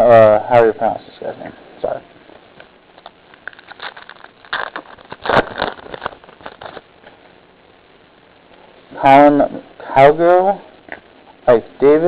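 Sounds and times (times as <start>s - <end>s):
trading cards flipped through: 3.0s - 6.8s.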